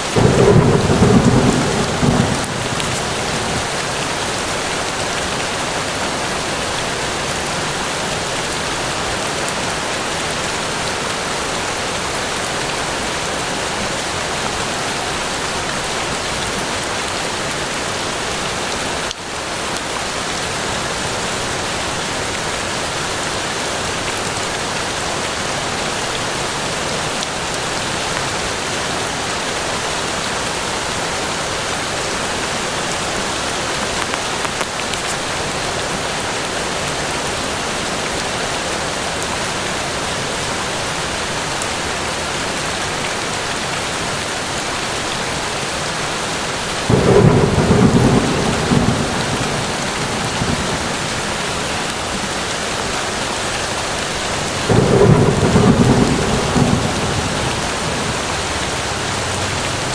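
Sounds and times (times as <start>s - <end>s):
rain falling in a forest: 0.0s - 59.9s
low rumbles of thunder: 0.1s - 5.6s, 46.8s - 52.4s, 53.9s - 59.9s.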